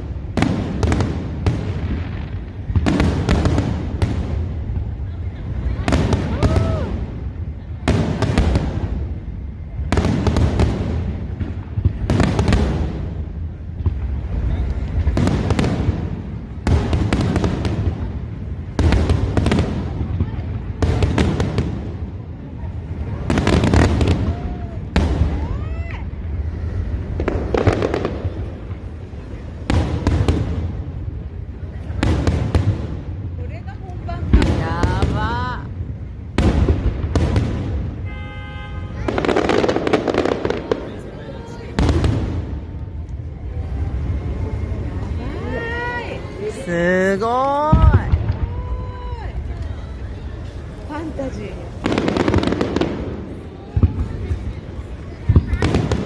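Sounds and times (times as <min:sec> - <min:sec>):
continuous low rumble: 0:00.0 - 0:46.9, 0:47.5 - 0:56.0
fireworks booming: 0:00.0 - 0:56.0
fireworks crackling: 0:00.0 - 0:56.0
sharp firework cracks: 0:34.2 - 0:43.3, 0:51.6 - 0:56.0
firework shells booming: 0:36.0 - 0:43.0.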